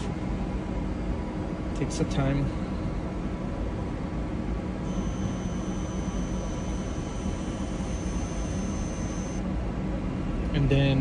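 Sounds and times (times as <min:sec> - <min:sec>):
ventilation fans hiss: 0:00.0 - 0:11.0
printer high whine: 0:04.2 - 0:09.4.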